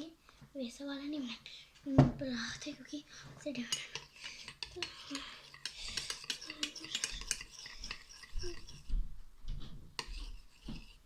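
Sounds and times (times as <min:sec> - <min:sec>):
utensil stirring in a bowl: 0:02.6 - 0:11.0.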